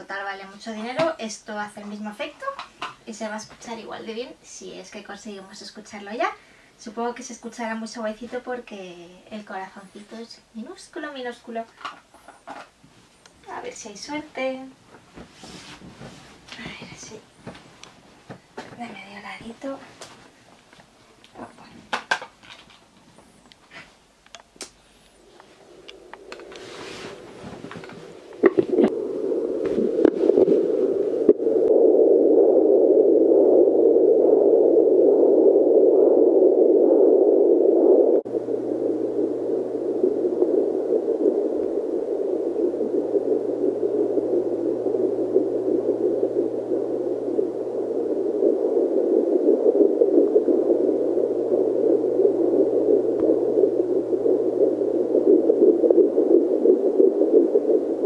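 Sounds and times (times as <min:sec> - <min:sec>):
steady low hum: 0:23.0 - 0:58.0
probe scraping and crackling on skin: 0:24.3 - 0:58.0
loud rushing static: 0:25.2 - 0:58.0.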